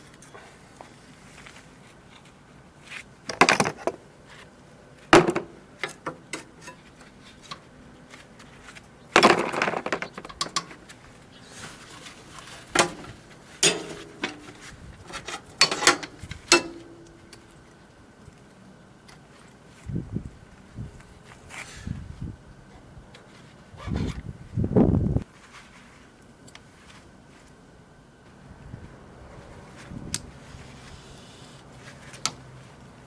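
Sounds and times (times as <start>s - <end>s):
hand tools and metal parts clattering: 5.1s - 17.6s.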